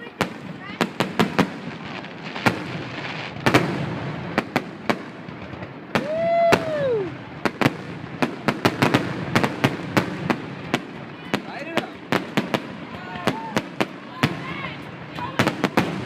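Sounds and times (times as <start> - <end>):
firework bangs and cracks: 0.0 - 16.0
firework whistle: 5.9 - 7.2.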